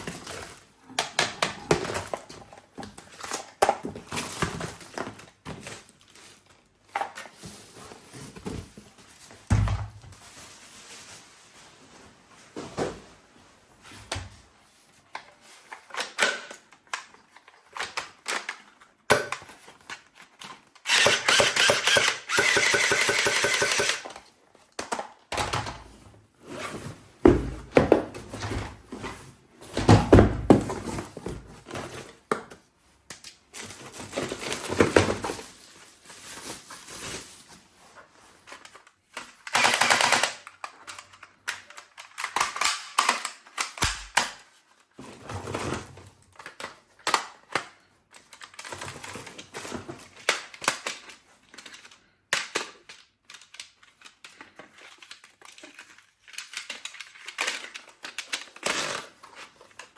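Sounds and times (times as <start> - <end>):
packaging rustling: 0.0 - 21.0, 30.5 - 39.5, 40.4 - 59.9
plastic and metal parts clicking: 15.2 - 25.6, 38.5 - 44.6, 50.2 - 59.9.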